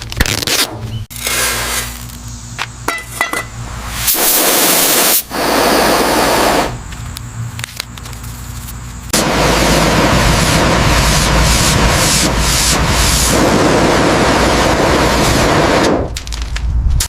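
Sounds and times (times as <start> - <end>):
pressurised spray hissing: 3.9 - 6.8, 9.1 - 15.9.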